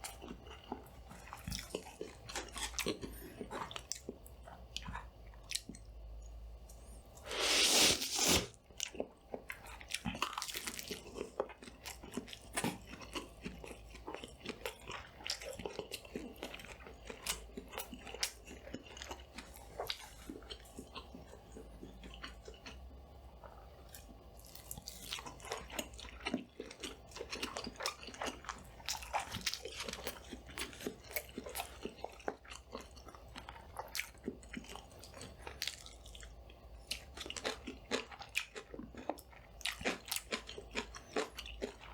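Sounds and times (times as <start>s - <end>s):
chewing with crisp crunches: 0.0s - 41.9s
wet mouth sounds: 7.2s - 8.6s.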